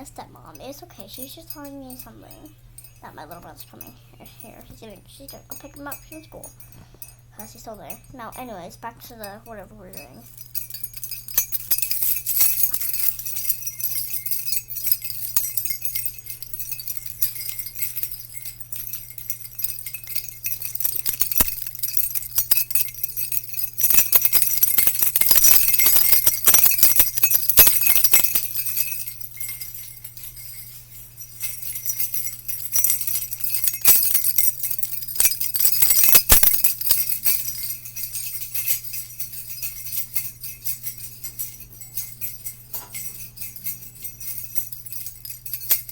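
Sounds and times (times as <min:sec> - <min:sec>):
jingle bells shaking: 0:00.0 - 0:45.9
steady low hum: 0:00.0 - 0:45.9.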